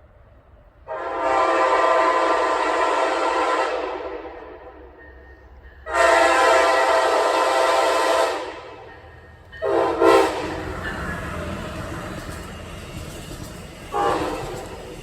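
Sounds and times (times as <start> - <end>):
train rumble: 0.0 - 15.0
train air horn blasts: 0.8 - 5.0, 5.8 - 8.9, 9.6 - 10.8, 13.9 - 14.8.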